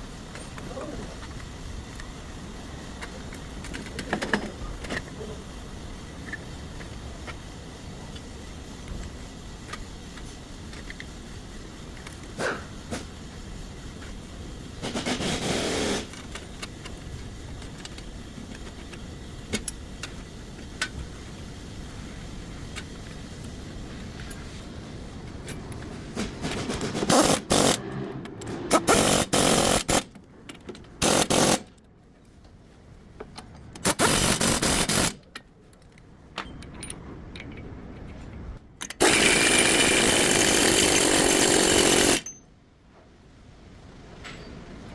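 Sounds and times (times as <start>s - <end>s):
power tool hissing bursts: 14.6s - 16.3s, 27.0s - 28.0s, 28.7s - 30.1s, 31.0s - 31.7s, 33.8s - 35.2s, 39.0s - 42.2s.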